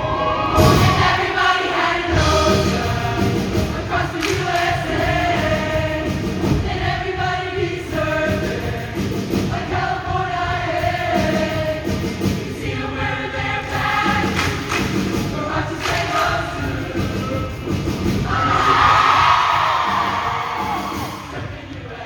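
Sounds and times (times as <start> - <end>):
instrumental accompaniment with beat: 0.0 - 21.8
choir singing: 0.0 - 22.0.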